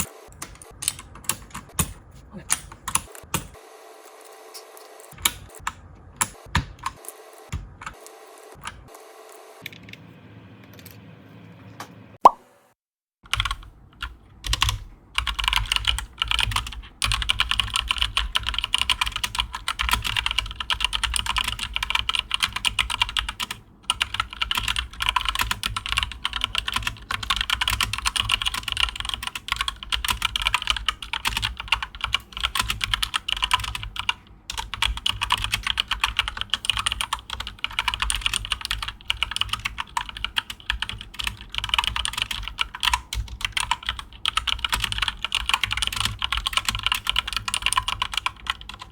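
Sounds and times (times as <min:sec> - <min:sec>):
fast typing on keyboard: 0:13.3 - 0:48.9.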